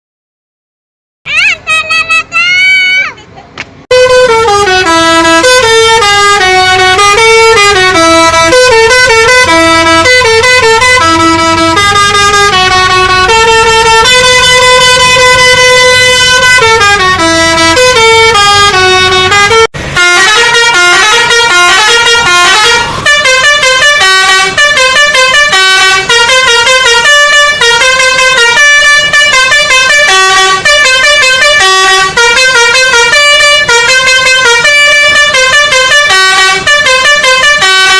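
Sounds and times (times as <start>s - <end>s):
musical horn playing a tune: 3.9s - 37.9s.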